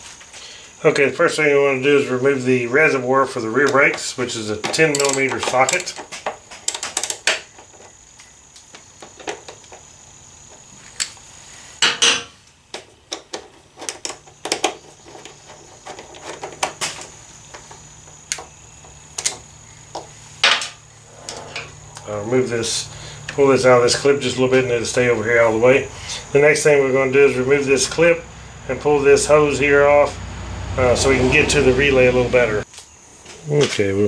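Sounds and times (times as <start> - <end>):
metal tools clinking and tapping: 4.6 - 7.1, 11.8 - 12.4
tool clatter: 4.6 - 7.9, 11.8 - 18.5.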